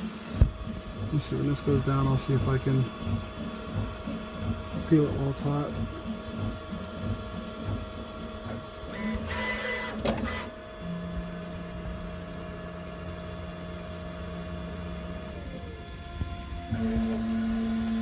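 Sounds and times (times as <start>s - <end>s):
printer motors moving: 0.0s - 18.0s
steady motor hum: 0.0s - 18.0s
printer click: 8.9s - 10.5s.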